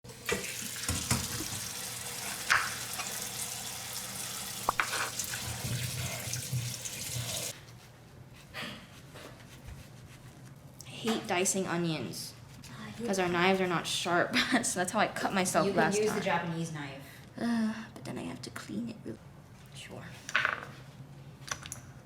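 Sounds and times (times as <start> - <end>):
tap running into a sink: 0.1 - 7.5.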